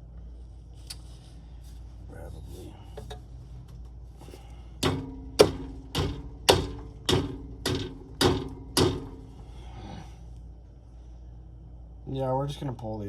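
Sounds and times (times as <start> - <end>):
hammer blows on metal: 4.8 - 9.4.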